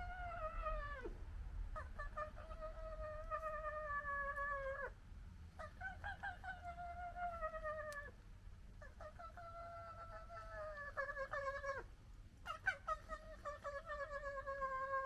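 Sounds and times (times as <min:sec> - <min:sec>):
long yowling animal calls: 0:01.8 - 0:04.9, 0:05.6 - 0:08.2, 0:08.8 - 0:11.9, 0:12.5 - 0:15.0.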